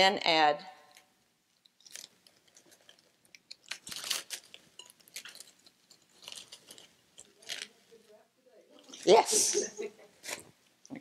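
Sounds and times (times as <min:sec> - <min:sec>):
crunchy rustling and scraping: 0:01.7 - 0:08.0.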